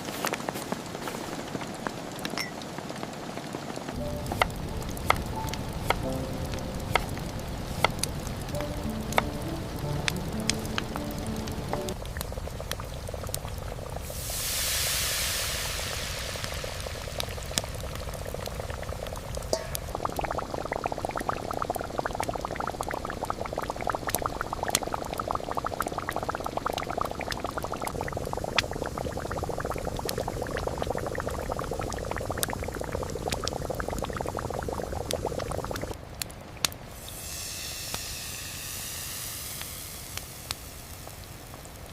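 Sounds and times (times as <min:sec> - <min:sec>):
liquid boiling in a pot: 0:00.0 - 0:41.9
brief hiss: 0:14.1 - 0:17.5, 0:36.9 - 0:41.5.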